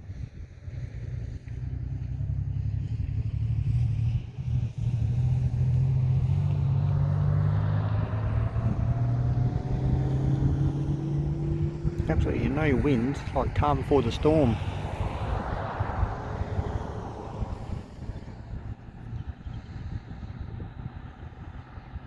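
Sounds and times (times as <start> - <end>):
vehicle engine humming: 0.5 - 22.0
rising whine: 5.9 - 18.9.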